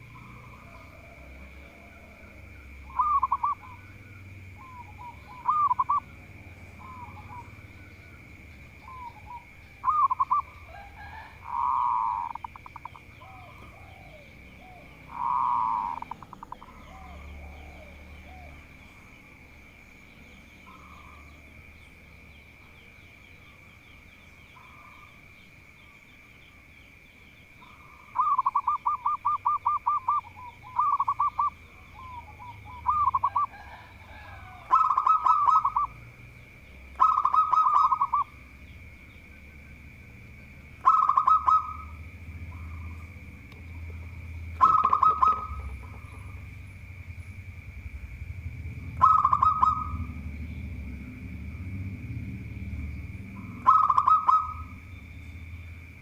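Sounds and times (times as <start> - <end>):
dove cooing: 0.0 - 18.7, 27.6 - 36.1, 36.9 - 38.5, 40.8 - 46.6, 48.8 - 50.4, 53.4 - 54.8.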